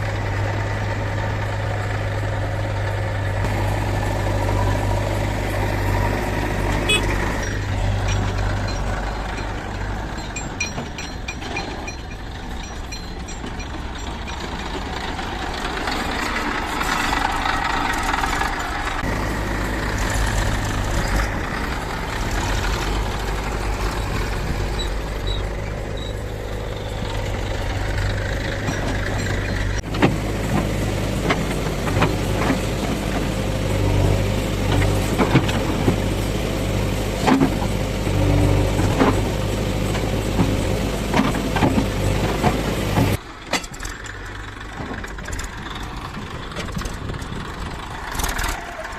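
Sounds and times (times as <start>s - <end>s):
diesel engines running: 0.0s - 48.9s
sharp knocks and clanks: 3.4s - 36.4s, 37.1s - 45.6s.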